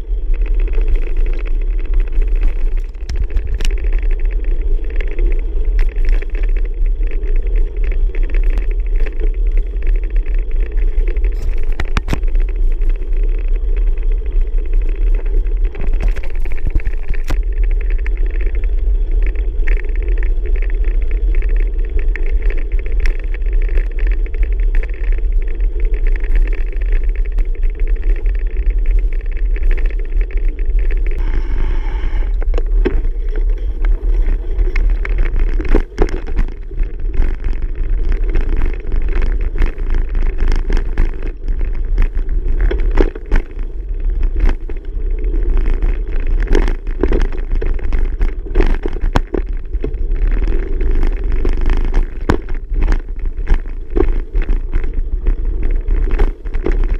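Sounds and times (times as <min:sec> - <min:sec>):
bicycle riding rumble: 0:00.0 - 0:56.9
sharp clicks and knocks: 0:11.2 - 0:12.5.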